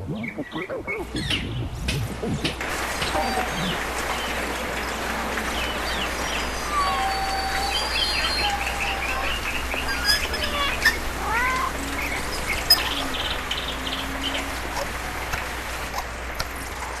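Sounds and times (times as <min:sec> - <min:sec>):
rapid high animal chirping: 0:00.0 - 0:02.5, 0:06.4 - 0:14.2
rising meow-like calls: 0:06.1 - 0:13.2.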